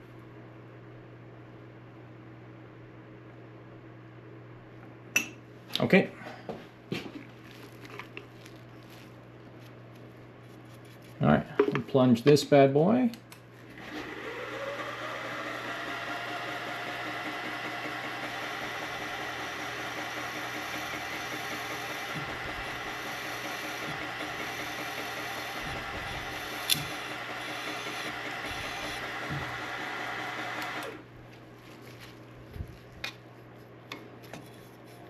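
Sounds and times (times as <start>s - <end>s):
milling spindle whining: 13.8s - 31.0s.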